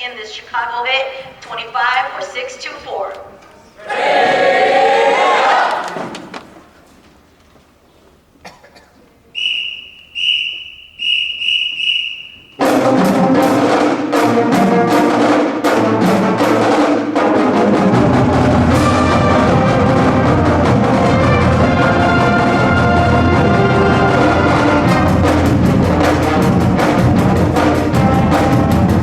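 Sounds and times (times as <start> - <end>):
whistle blasts: 9.4 - 12.8
marching band playing: 11.1 - 29.0.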